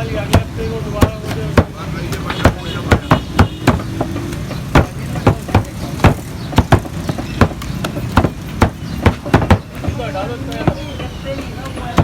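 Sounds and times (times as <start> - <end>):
cleaver chopping meat: 0.2 - 9.7.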